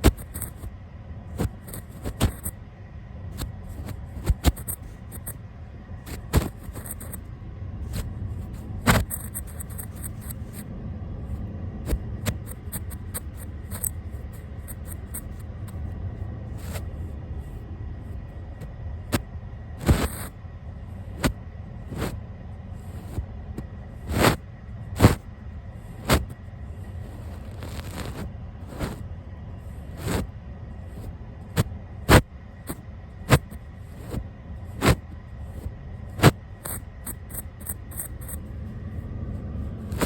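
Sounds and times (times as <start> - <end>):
brush rubbing on microphone: 0.0 - 0.7, 1.4 - 2.6, 3.4 - 5.4, 6.1 - 7.2, 7.8 - 10.7, 11.9 - 15.8, 27.1 - 29.0, 29.9 - 30.3, 34.8 - 38.4.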